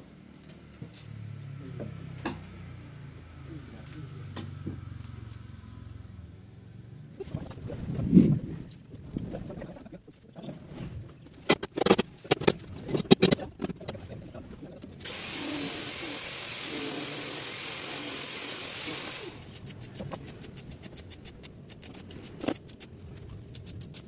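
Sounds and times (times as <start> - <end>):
sharp knocks and clicks: 11.4 - 14.0
rushing air hiss: 15.0 - 19.7.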